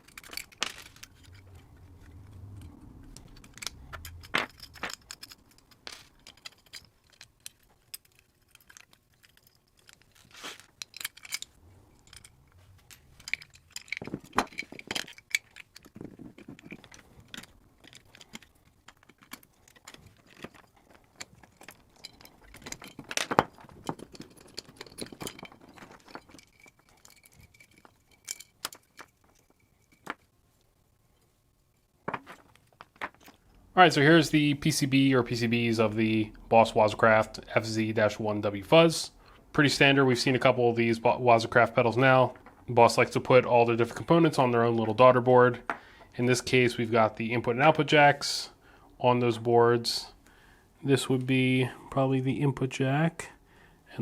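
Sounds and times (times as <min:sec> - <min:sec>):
metal parts clinking and clicking: 0:00.0 - 0:33.6, 0:41.5 - 0:46.8.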